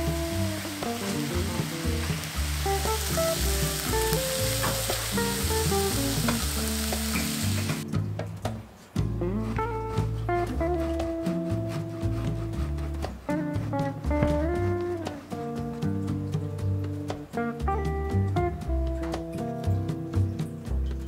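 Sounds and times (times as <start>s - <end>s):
sizzling hiss: 0.0s - 7.9s
guitar music with bass line: 0.0s - 21.0s.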